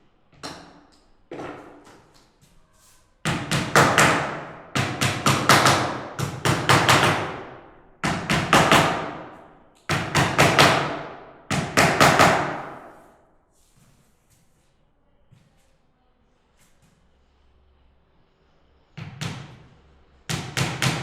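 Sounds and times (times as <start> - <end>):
hammer striking nails into wood: 3.3 - 13.0, 20.3 - 21.0.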